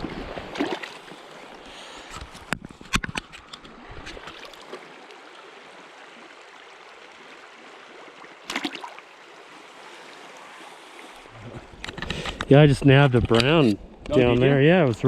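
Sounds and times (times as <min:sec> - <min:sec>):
river water flowing: 0:00.0 - 0:15.0.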